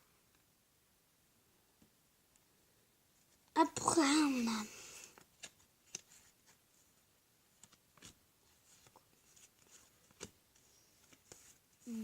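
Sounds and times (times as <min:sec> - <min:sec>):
trading cards being handled: 0:05.0 - 0:06.6, 0:07.5 - 0:12.0.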